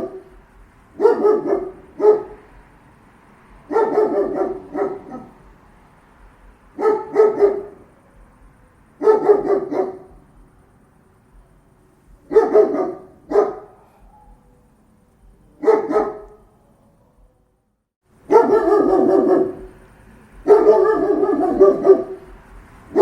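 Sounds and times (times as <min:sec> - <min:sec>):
large dog barking deeply: 0:00.0 - 0:02.6, 0:03.5 - 0:05.6, 0:06.7 - 0:08.2, 0:09.0 - 0:10.3, 0:12.2 - 0:14.7, 0:15.5 - 0:17.3, 0:18.3 - 0:19.8, 0:20.4 - 0:23.0.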